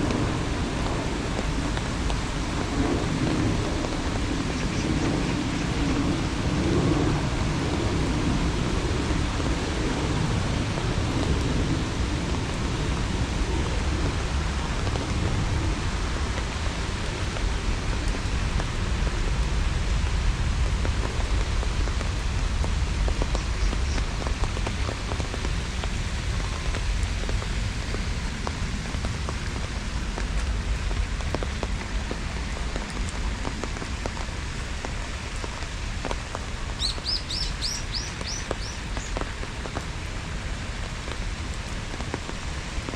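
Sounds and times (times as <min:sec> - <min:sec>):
low thunder rumble: 0:00.0 - 0:35.1
steady rain falling: 0:00.0 - 0:42.9
bird chirping: 0:36.8 - 0:39.1.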